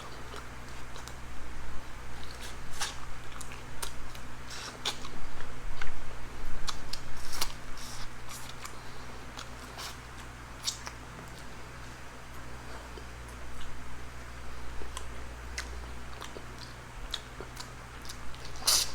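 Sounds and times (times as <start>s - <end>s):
crisp eating crunches: 14.7s - 18.9s
wet chewing clicks: 14.8s - 18.9s.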